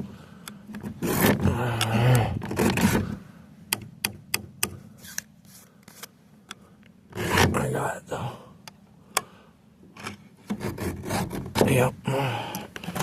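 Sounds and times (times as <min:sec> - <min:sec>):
sharp metallic clicks and taps: 0:03.7 - 0:04.8
rough scraping strokes: 0:04.9 - 0:06.1.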